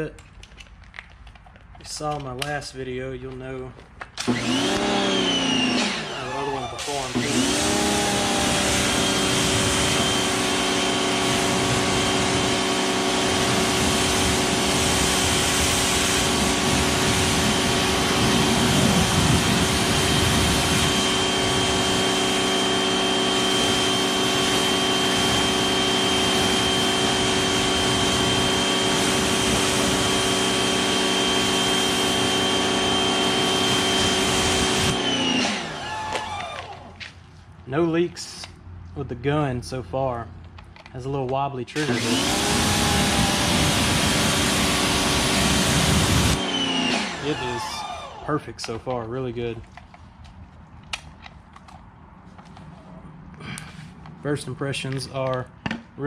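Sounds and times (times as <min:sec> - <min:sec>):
pressure washer motor whine: 0:04.2 - 0:37.1, 0:41.8 - 0:48.8.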